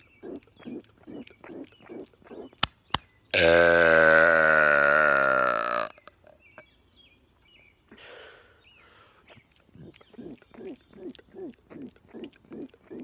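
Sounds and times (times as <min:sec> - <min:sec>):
man burping: 0:03.4 - 0:06.1.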